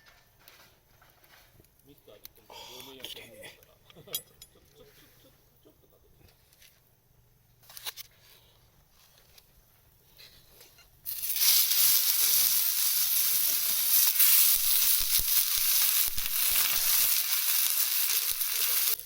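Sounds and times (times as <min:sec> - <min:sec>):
food sizzling on a hot pan: 0:11.0 - 0:19.0.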